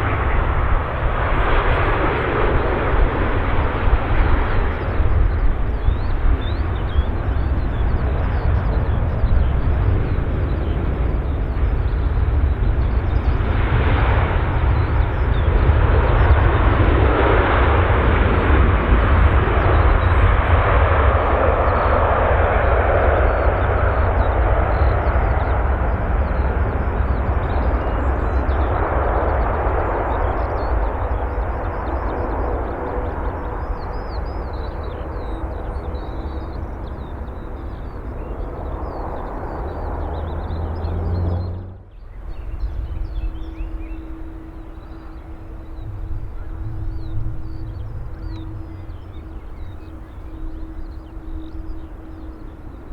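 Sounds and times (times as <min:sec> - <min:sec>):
jet engines roaring: 0:00.0 - 0:52.9
small birds chirping: 0:04.6 - 0:14.0, 0:23.0 - 0:52.9.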